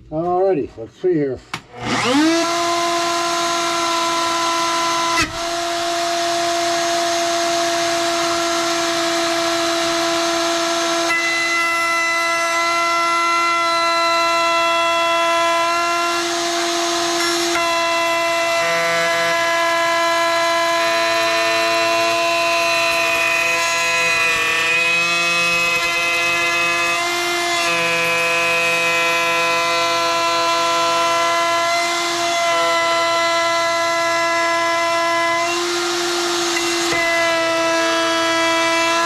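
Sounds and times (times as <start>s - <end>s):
wood router whining: 1.6s - 39.0s.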